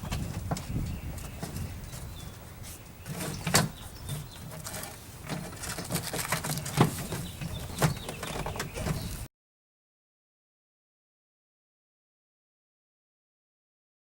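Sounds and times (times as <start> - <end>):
door trim panel rustling: 3.1 - 9.3.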